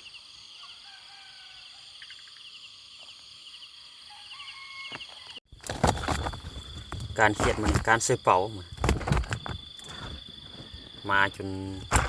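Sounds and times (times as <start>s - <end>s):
crickets chirping: 0.0s - 12.0s
faint short insect calls: 0.0s - 12.0s
insect trills: 0.0s - 12.0s
rustling and knocking: 5.6s - 12.0s.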